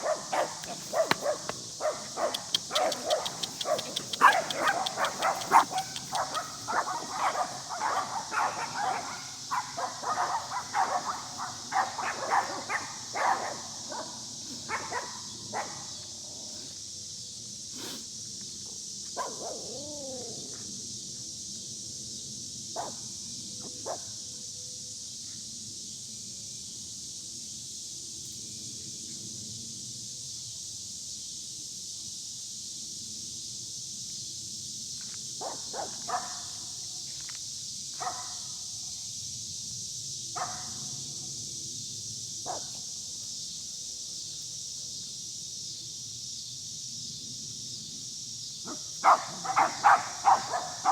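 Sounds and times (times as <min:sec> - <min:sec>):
dog barking: 0:00.0 - 0:15.9, 0:19.2 - 0:19.7, 0:22.8 - 0:23.0, 0:35.4 - 0:36.5, 0:38.0 - 0:38.4, 0:40.4 - 0:40.8, 0:42.5 - 0:42.8, 0:48.7 - 0:50.9
steady high hiss: 0:36.6 - 0:50.9.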